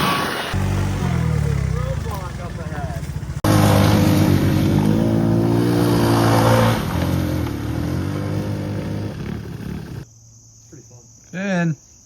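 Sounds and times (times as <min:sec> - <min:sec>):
vehicle engine running: 0:00.5 - 0:10.0.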